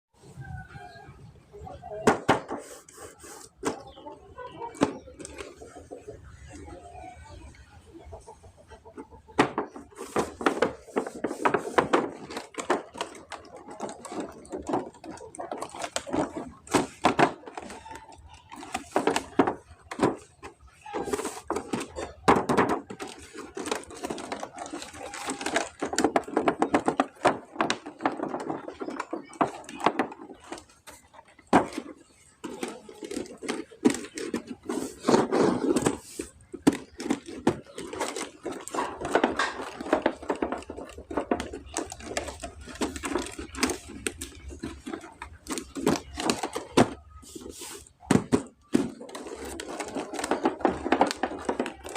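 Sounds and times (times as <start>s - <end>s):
plastic toys and packaging handled: 0.3s - 51.9s.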